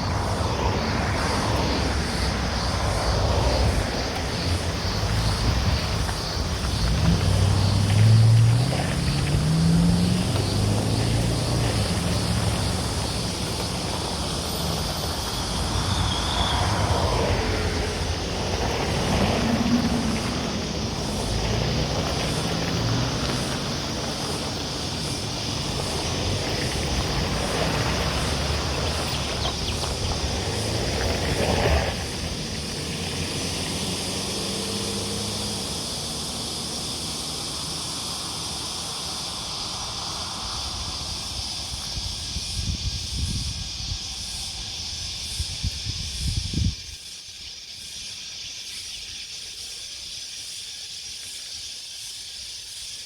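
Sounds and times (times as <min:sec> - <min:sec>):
vehicle engine passing: 0:00.0 - 0:42.5.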